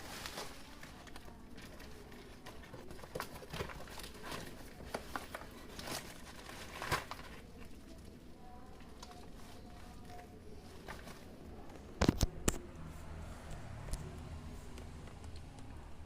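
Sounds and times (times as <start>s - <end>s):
plastic packaging crinkling: 0.0s - 12.6s.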